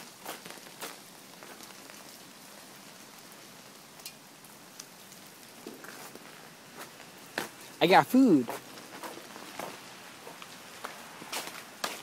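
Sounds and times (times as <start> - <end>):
freezing rain hissing: 0.0 - 12.0
light ticks: 4.0 - 4.2.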